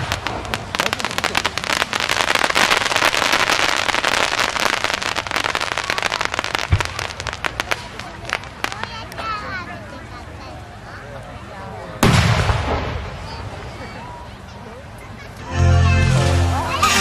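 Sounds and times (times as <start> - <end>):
fireworks crackling: 0.0 - 10.5, 12.0 - 14.2, 15.2 - 17.0
deep firework boom: 12.0 - 13.5.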